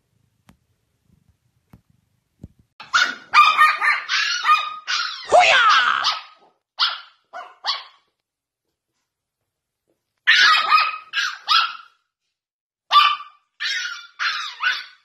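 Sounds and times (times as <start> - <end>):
dog barking: 2.8 - 8.1, 10.3 - 12.0, 12.9 - 15.0.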